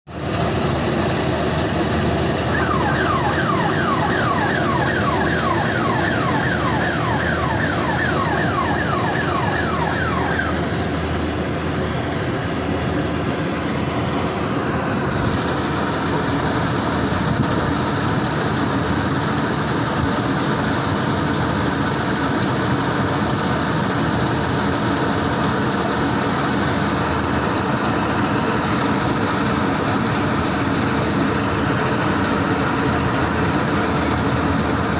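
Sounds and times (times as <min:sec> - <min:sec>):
combine harvester running: 0:00.1 - 0:34.9
falling warning tone: 0:02.2 - 0:12.1.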